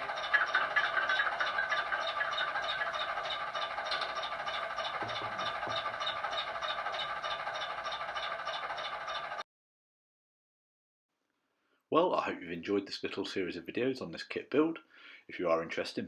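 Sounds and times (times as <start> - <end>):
diesel engine sound through small speaker: 0.0 - 9.4.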